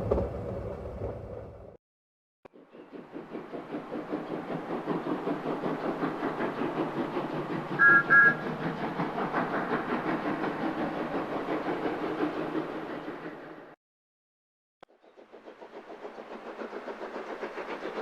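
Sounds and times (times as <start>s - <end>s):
steam locomotive chuffing: 2.6s - 13.8s, 14.9s - 18.0s
two-note whistle peeps: 7.8s - 8.4s.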